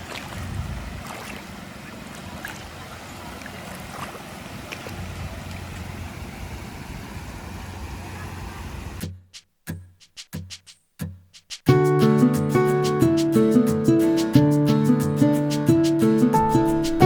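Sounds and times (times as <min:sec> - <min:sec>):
sea water rushing: 0:00.0 - 0:09.0
wind: 0:00.0 - 0:09.3.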